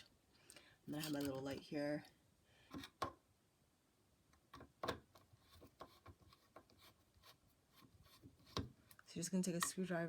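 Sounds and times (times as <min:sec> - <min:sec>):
faint clicks and rubbing: 0:04.6 - 0:09.8.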